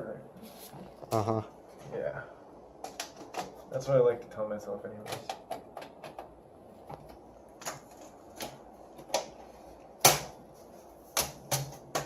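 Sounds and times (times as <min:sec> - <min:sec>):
computer parts clicking and knocking: 0:05.0 - 0:06.4.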